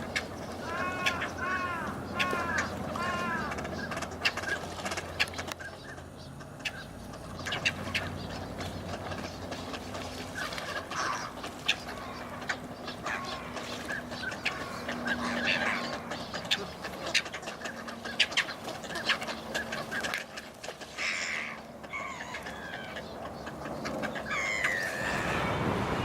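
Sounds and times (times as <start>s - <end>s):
waterbirds calling: 0.0s - 26.0s.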